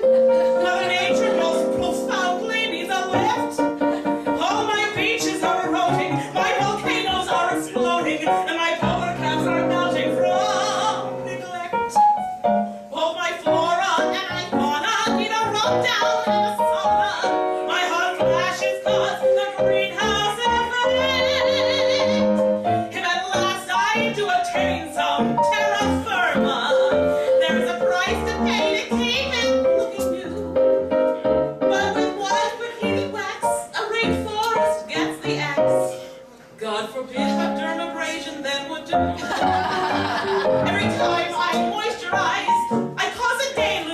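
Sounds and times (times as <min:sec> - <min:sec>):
piano accompaniment: 0:00.0 - 0:43.9
woman singing: 0:00.5 - 0:12.2, 0:12.9 - 0:30.6, 0:31.7 - 0:36.0, 0:40.7 - 0:43.9.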